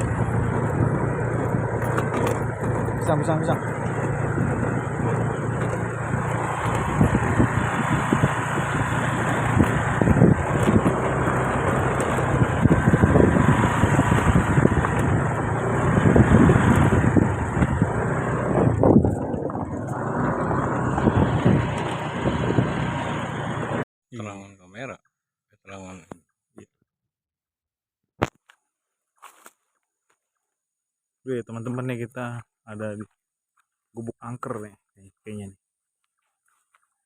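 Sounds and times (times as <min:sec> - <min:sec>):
rough road noise: 0:00.0 - 0:23.9, 0:28.2 - 0:30.6
vehicle engine drone: 0:00.0 - 0:23.9.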